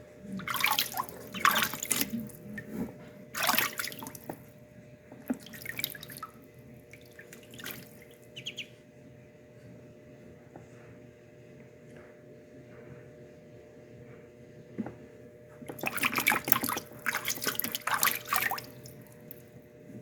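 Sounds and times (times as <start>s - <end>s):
water splashing and dripping: 0.3s - 2.7s, 3.4s - 4.5s, 5.2s - 8.6s, 15.7s - 19.4s.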